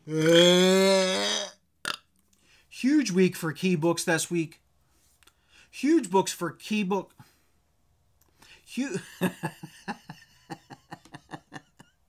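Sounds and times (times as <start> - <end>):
man burping loudly: 0.0 - 2.1.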